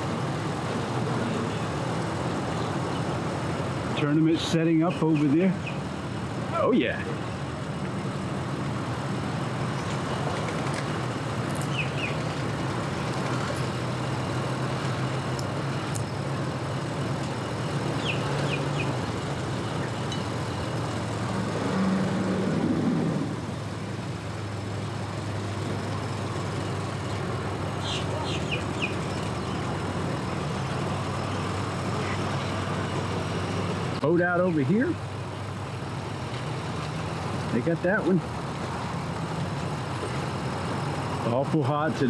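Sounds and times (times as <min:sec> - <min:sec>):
boat engines humming: 0:00.0 - 0:42.0
engine revving: 0:08.1 - 0:23.7.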